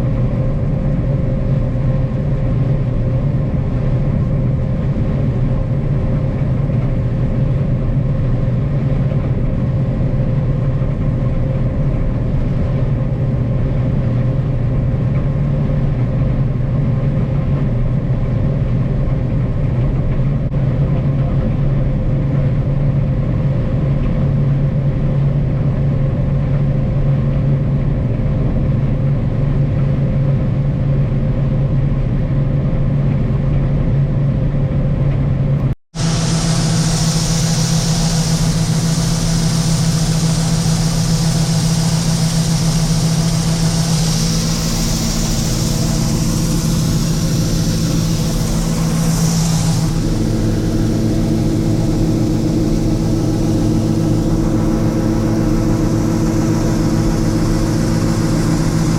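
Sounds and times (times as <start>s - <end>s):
combine harvester engine drone: 0.0s - 58.9s
faint higher hum: 36.0s - 58.9s.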